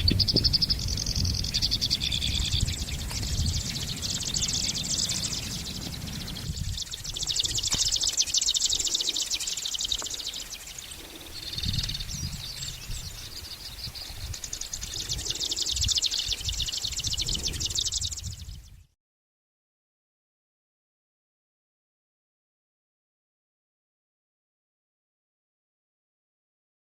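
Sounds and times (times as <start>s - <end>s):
warbler high-pitched trill: 0.0s - 18.8s.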